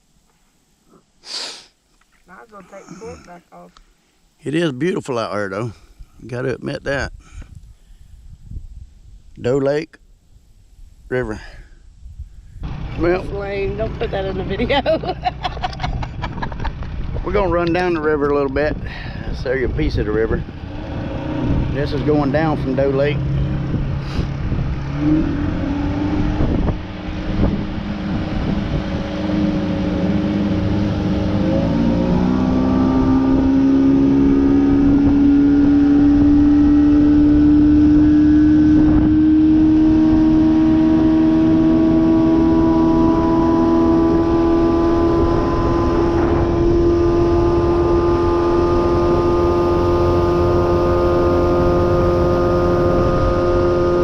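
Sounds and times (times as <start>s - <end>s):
outboard motor revving: 12.6s - 54.0s.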